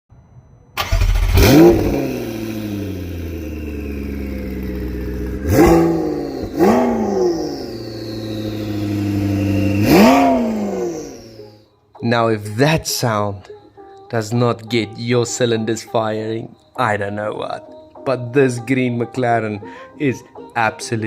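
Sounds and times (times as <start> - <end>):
car engine revving and idling: 0.8 - 11.5.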